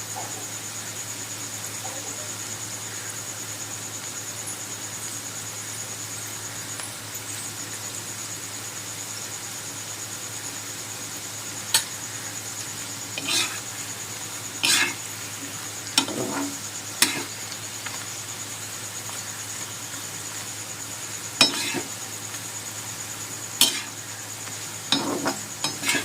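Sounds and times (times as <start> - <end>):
fries sizzling in hot oil: 2.4 - 26.0
metal utensil clinking and scraping pan: 13.2 - 13.7, 14.6 - 17.3, 21.4 - 21.9, 23.6 - 24.0, 24.9 - 26.0.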